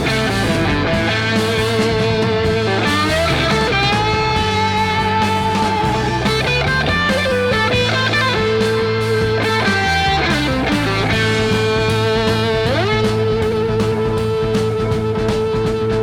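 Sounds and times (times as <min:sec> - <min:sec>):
electric guitar lead: 0:00.0 - 0:16.0
hard rock bass and drums: 0:00.0 - 0:16.0.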